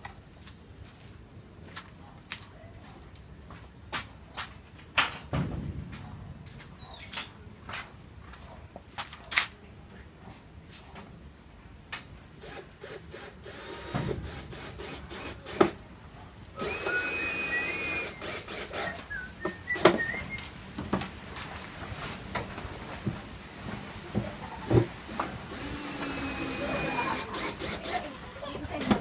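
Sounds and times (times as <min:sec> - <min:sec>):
power drill driving screws: 0:12.4 - 0:15.8, 0:16.6 - 0:19.1, 0:25.1 - 0:29.0.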